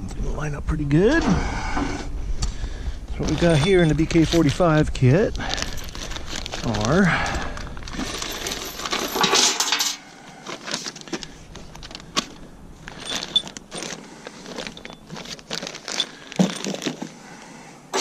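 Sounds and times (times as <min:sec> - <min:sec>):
steel hardware clinking and rattling: 0:03.2 - 0:04.6, 0:05.4 - 0:17.2.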